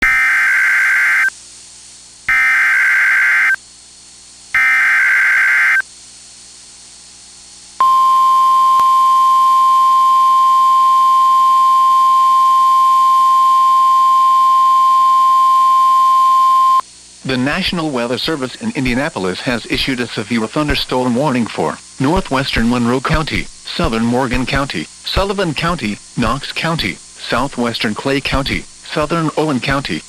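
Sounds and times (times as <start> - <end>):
steady warning alarm tone: 0.0 - 1.3, 2.3 - 3.6, 4.6 - 5.8, 7.8 - 16.8.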